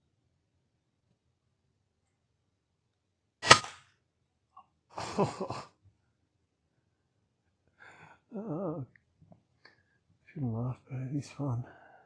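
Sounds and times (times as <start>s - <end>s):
air rifle shot crack: 3.4s - 3.8s.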